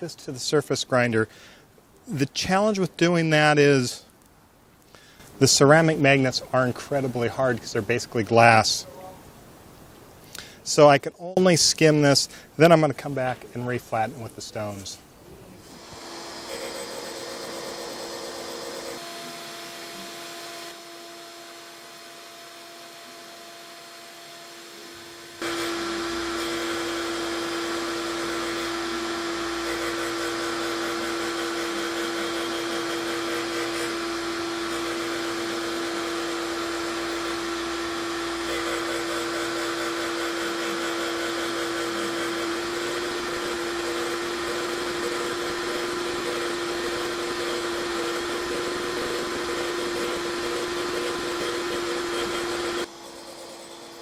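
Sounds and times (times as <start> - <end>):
surface grinder whining: 15.6 - 54.0.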